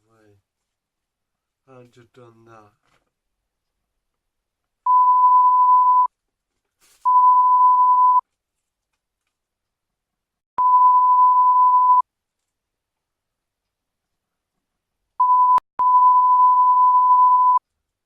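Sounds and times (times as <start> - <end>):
censor bleeps: 4.9 - 6.1, 7.1 - 8.2, 10.6 - 12.0, 15.2 - 17.6.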